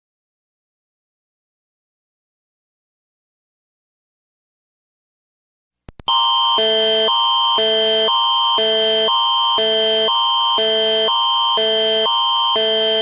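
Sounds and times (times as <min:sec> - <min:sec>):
electronic alert tone: 0:06.1 - 0:13.0.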